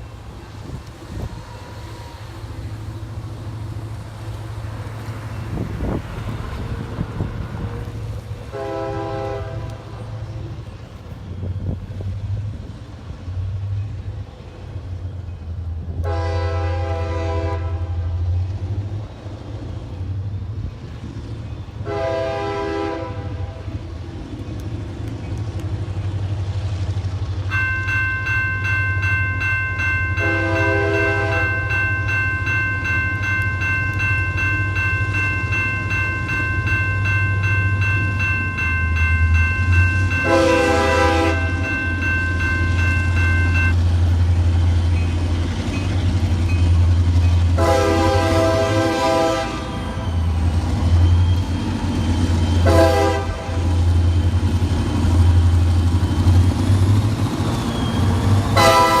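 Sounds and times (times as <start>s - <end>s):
low rumble of train: 0.0s - 59.0s
diesel locomotive horn blasts: 7.0s - 10.6s, 15.9s - 18.4s, 21.8s - 23.8s, 30.1s - 31.8s, 40.0s - 43.7s, 47.5s - 50.5s, 52.6s - 54.0s, 58.5s - 59.0s
bell ringing rapidly: 27.5s - 43.8s.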